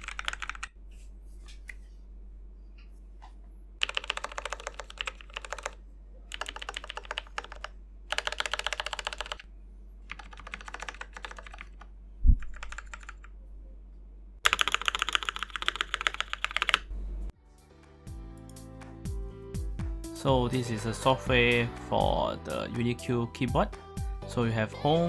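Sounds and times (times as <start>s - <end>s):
mechanical keyboard typing: 0.0s - 0.7s, 3.8s - 9.4s, 10.1s - 13.3s, 14.4s - 16.9s.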